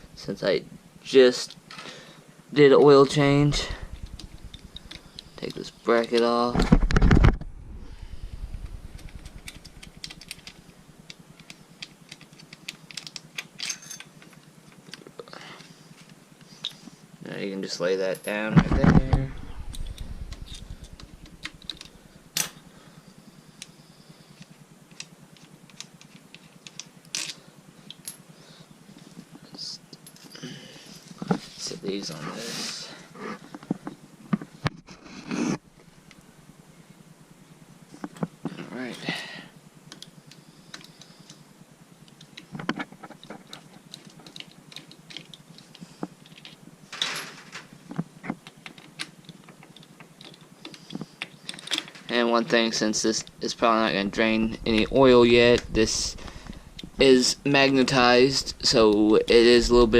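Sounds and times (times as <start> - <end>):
metal parts and tools clicking: 9.1 - 15.0.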